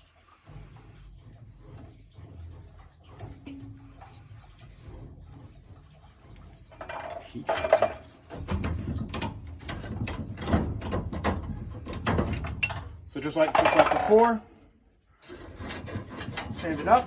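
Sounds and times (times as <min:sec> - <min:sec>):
metallic scraping on pipe: 0:15.2 - 0:17.0.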